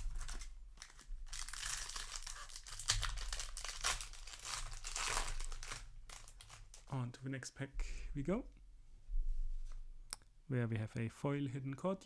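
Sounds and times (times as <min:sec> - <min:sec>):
foil wrapper crinkling and tearing: 0:00.0 - 0:07.0.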